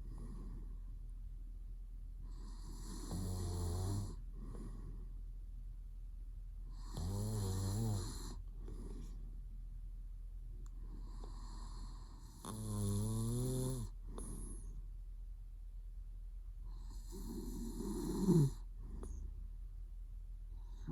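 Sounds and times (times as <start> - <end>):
man snoring: 2.3 - 4.9, 6.7 - 9.1, 11.0 - 14.7, 16.7 - 19.2, 20.7 - 20.9.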